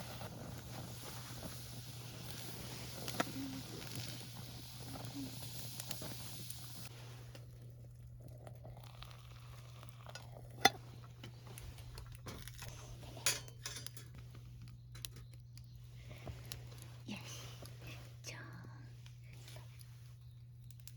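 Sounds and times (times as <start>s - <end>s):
food sizzling: 0.0s - 6.9s.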